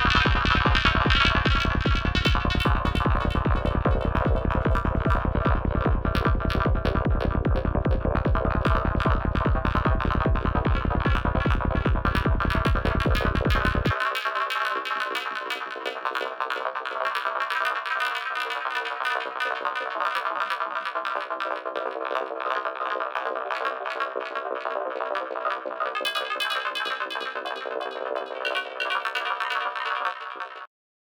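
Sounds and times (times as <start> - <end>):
dense synth layer: 0.0 - 14.0
pulsing kick and bass: 0.0 - 14.1.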